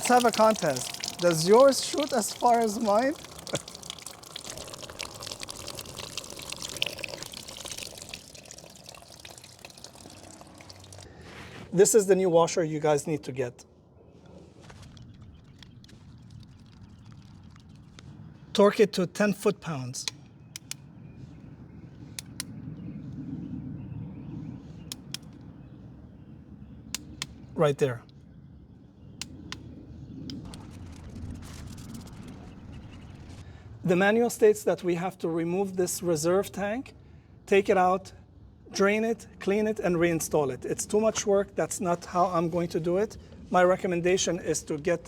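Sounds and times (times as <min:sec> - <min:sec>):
coolant streaming and splashing: 0:00.0 - 0:11.6.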